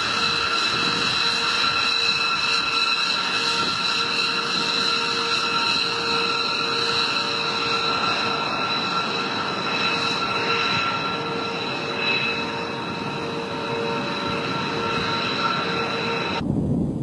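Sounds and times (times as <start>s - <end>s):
high whining tones: 0.0s - 16.4s
jet engines roaring: 0.0s - 17.0s.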